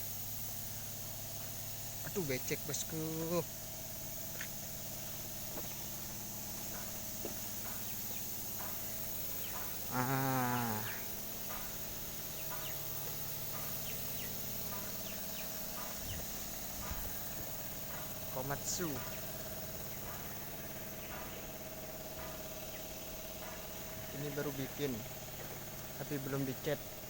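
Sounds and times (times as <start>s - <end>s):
faint chirps: 0.0s - 27.0s
low machine hum: 0.0s - 27.0s
wavering call: 9.8s - 11.2s.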